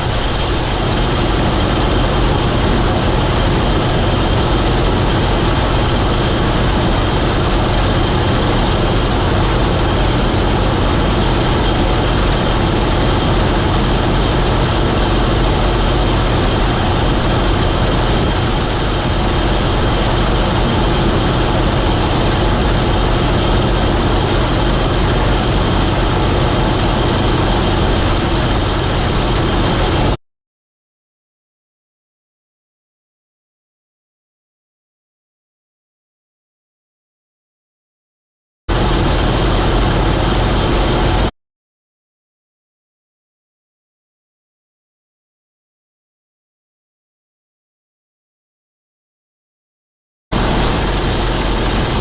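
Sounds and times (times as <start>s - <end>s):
combine harvester drone: 0.0s - 30.2s, 38.7s - 41.3s, 50.3s - 52.0s.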